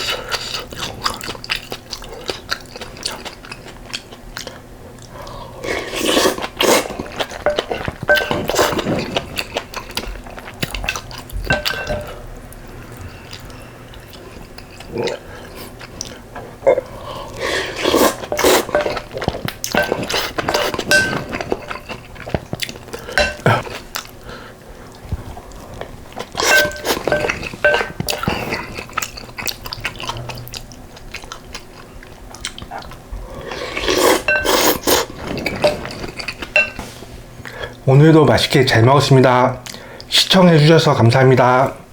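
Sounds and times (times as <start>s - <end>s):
person crunching food: 12.5s - 36.6s
spoon clinking against bowl: 19.7s - 22.0s, 23.1s - 23.5s, 26.4s - 28.3s, 34.3s - 34.6s.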